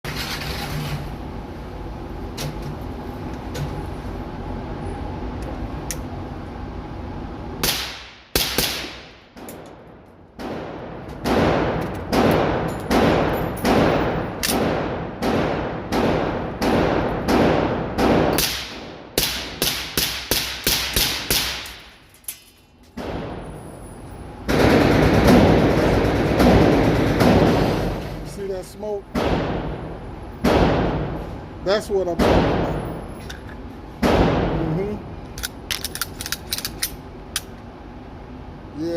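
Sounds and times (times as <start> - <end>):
pistol shots with ringing echo: 7.6 - 9.6, 10.4 - 21.9, 32.2 - 33.0.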